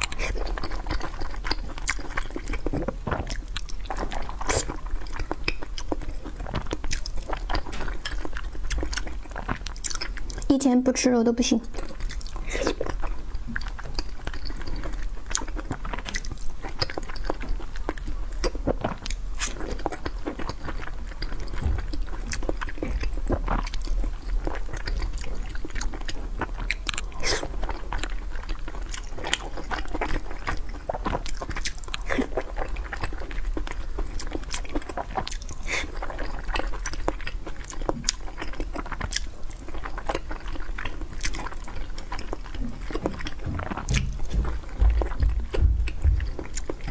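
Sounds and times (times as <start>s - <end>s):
person chewing close up: 0.0s - 10.5s, 11.7s - 46.9s
steady low hum: 43.4s - 46.6s.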